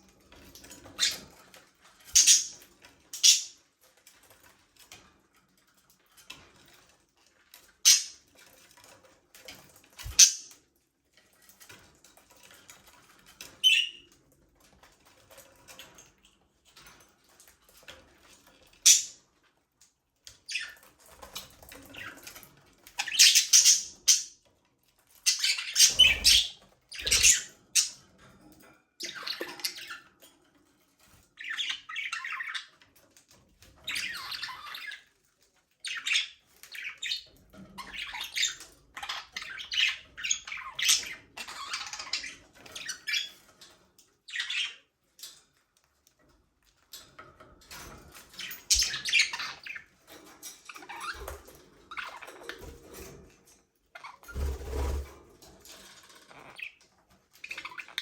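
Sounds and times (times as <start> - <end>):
budgerigars chirping and squawking: 0.6 - 1.4, 2.1 - 3.6, 7.8 - 8.3, 10.0 - 10.6, 13.6 - 14.0, 18.8 - 19.2, 20.5 - 24.4, 25.2 - 28.0, 29.0 - 30.1, 31.4 - 32.8, 33.8 - 35.1, 35.9 - 43.5, 44.3 - 44.9, 48.2 - 50.0, 50.7 - 53.1, 56.0 - 58.0.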